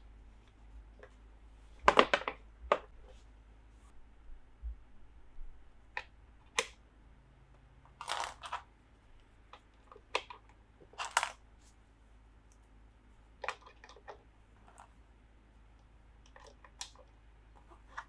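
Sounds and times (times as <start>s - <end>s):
plastic toy pieces clicking: 8.0s - 8.6s.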